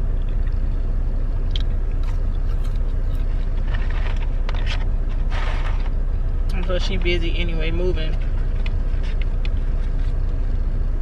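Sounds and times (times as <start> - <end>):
truck engine hum inside cab: 0.0 - 11.0
soft rustles and clicks: 1.6 - 7.2, 8.0 - 10.6.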